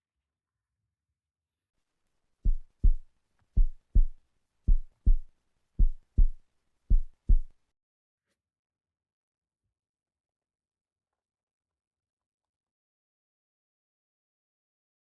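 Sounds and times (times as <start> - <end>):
heartbeat double thumps: 2.5 - 3.0, 3.6 - 7.5.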